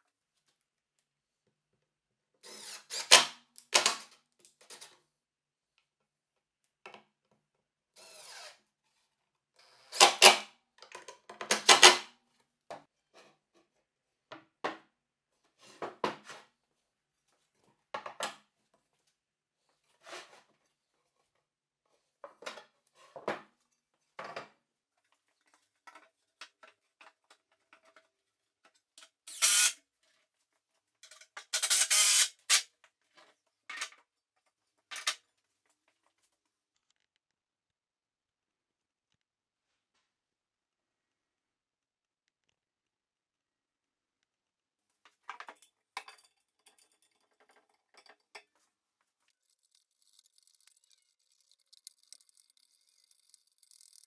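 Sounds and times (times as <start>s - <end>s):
power drill running in bursts: 29.3s - 29.8s.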